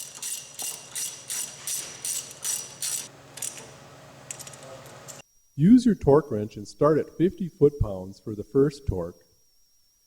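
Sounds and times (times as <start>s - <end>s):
ratchet wrench clicking: 0.0s - 3.6s.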